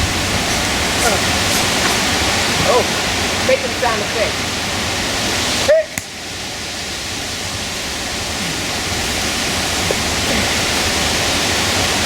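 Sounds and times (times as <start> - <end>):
wind on microphone: 0.0 - 3.4
rain: 0.0 - 12.0.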